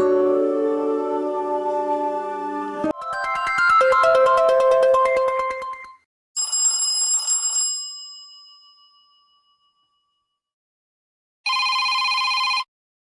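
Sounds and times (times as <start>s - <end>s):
steady electronic tone: 2.8s - 5.9s
bright chime: 2.9s - 5.9s.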